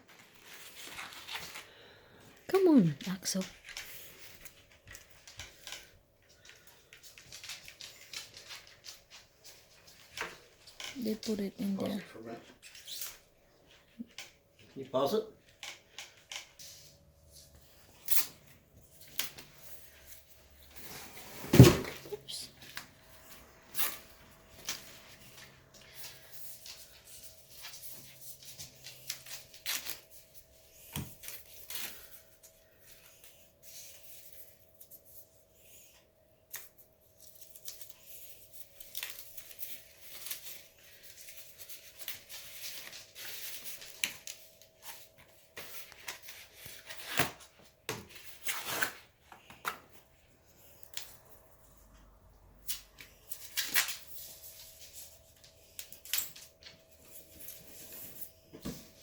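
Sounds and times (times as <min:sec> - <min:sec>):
packaging rustling and tearing: 0:00.1 - 0:02.0, 0:03.6 - 0:11.3, 0:17.8 - 0:35.1, 0:36.6 - 0:49.6.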